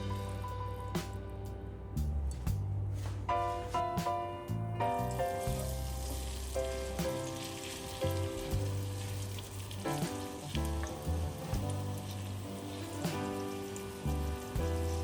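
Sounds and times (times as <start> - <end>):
soft background music: 0.0 - 15.0
food sizzling in oil: 5.0 - 15.0.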